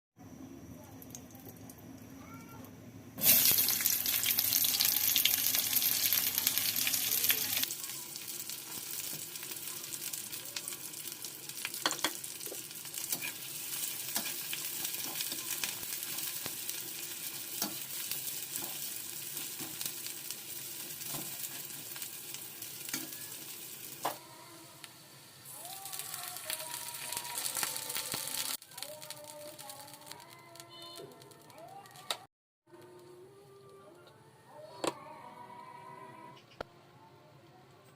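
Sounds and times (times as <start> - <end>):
food sizzling in hot oil: 3.2 - 30.6.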